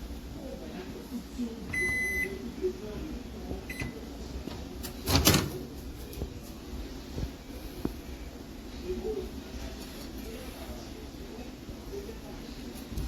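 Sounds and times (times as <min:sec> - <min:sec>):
microwave oven beeping: 0:01.7 - 0:02.5, 0:03.6 - 0:05.7.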